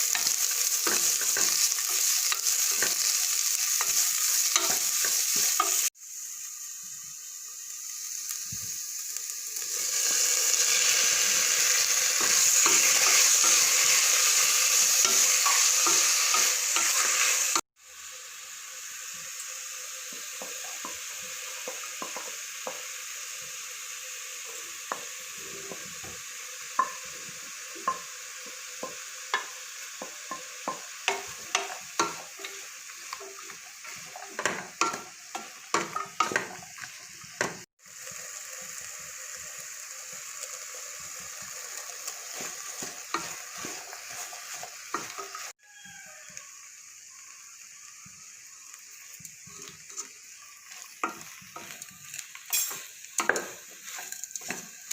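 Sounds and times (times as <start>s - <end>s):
food sizzling in a pan: 0.0s - 54.9s
spoon scraping a pan: 0.1s - 5.9s, 10.6s - 17.6s, 26.8s - 37.0s, 42.1s - 46.4s, 49.4s - 54.9s.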